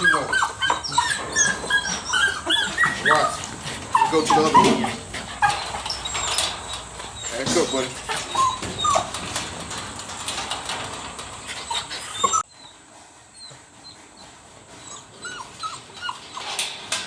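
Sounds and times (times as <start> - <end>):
scuffling and claw clicks: 0.0 - 12.4
puppies whining and yipping: 0.0 - 17.0.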